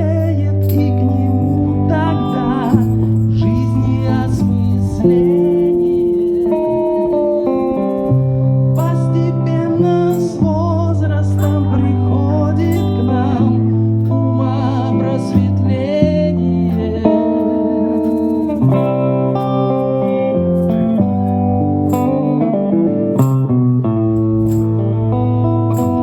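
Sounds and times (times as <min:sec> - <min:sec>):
guitar: 0:00.0 - 0:26.0
low bass line: 0:00.0 - 0:26.0
wavering vibrato melody: 0:00.6 - 0:10.8.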